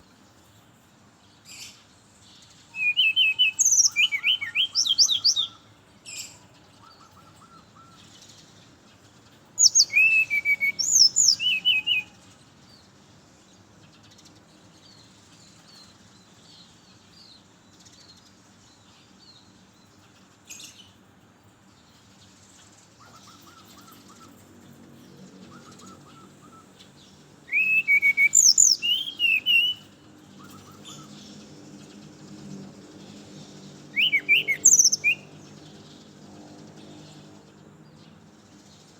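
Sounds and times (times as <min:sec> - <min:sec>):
faint bird chirps: 0:01.3 - 0:36.2
bird whistled song: 0:02.5 - 0:08.4, 0:09.6 - 0:12.8, 0:23.0 - 0:24.6, 0:25.3 - 0:32.3, 0:33.1 - 0:36.0.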